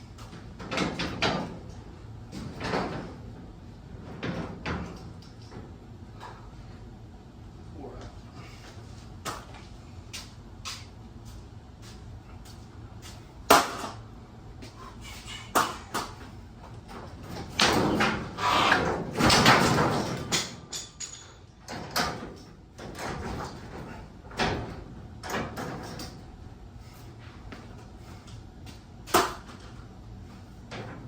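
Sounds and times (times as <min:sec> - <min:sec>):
knocks and clanks: 0:16.9 - 0:26.1.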